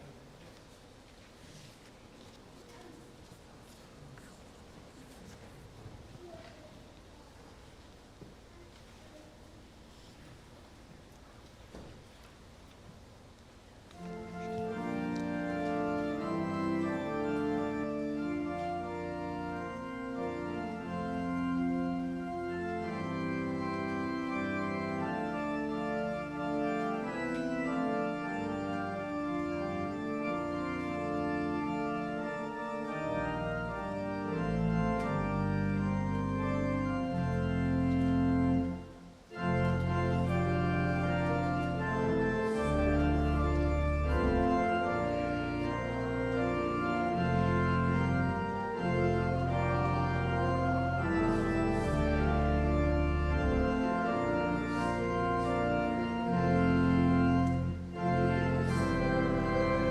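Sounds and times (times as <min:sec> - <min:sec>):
church organ chords: 0:13.9 - 0:59.9
deep organ pedal notes: 0:13.9 - 0:59.9.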